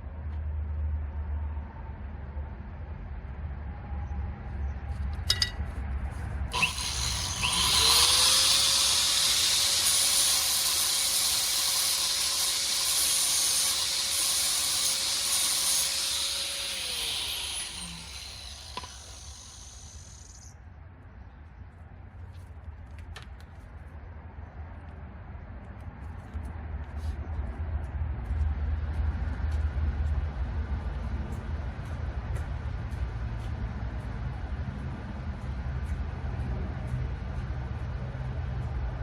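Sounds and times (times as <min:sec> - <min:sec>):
power tool motor humming: 0:06.5 - 0:20.5.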